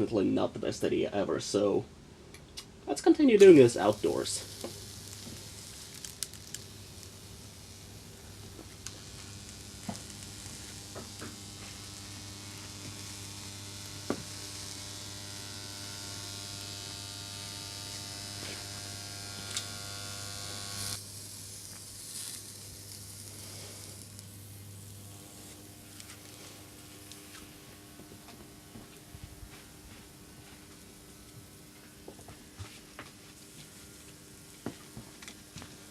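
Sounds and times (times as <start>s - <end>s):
insulation sizzling and crackling: 2.4s - 35.9s
transformer humming: 3.4s - 29.1s.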